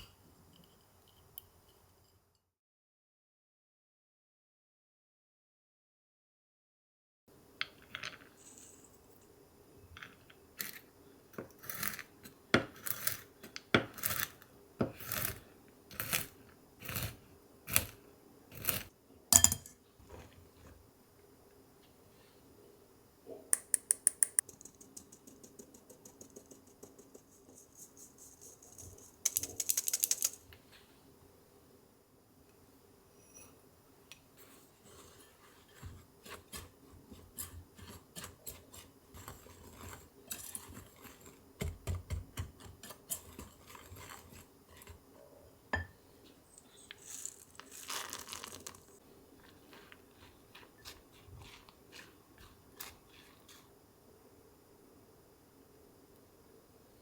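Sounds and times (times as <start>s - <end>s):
metal sieve tapping: 19.4s - 19.8s.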